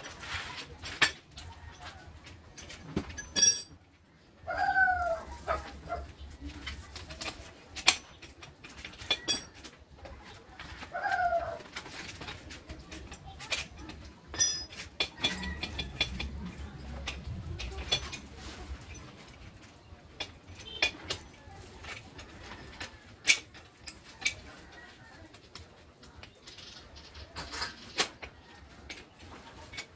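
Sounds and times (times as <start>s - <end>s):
clicks knocks and clinks: 0.8s - 3.9s, 11.8s - 25.6s.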